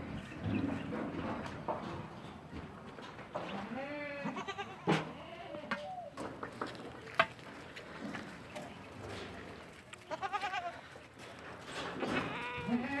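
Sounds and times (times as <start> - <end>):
goat bleating: 3.6 - 5.8, 10.0 - 10.9, 12.2 - 13.0.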